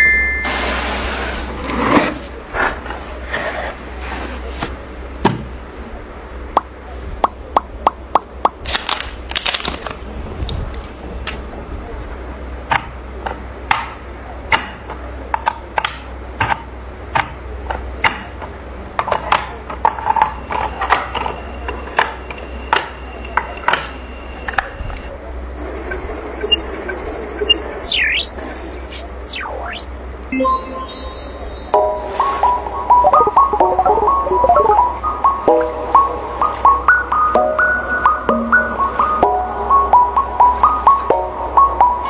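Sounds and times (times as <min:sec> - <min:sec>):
low hum: 0:25.6 - 0:31.8.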